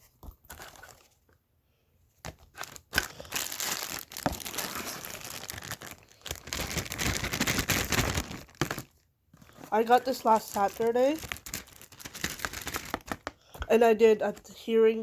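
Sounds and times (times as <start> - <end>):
packaging crinkling: 2.3 - 13.4.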